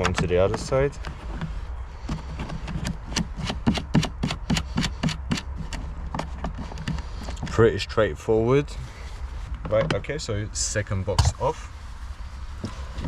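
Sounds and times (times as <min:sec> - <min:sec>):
rubbing and handling: 0:00.0 - 0:07.8, 0:08.8 - 0:10.2.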